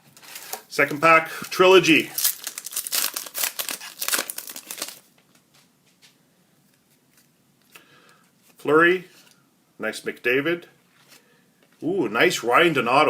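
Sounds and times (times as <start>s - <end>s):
wrapper tearing and crinkling: 0.1s - 5.1s.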